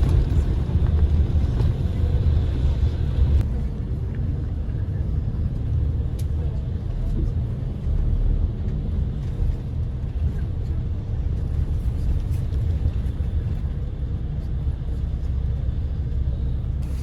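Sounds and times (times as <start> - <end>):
moving bus rumble: 0.0 - 17.0.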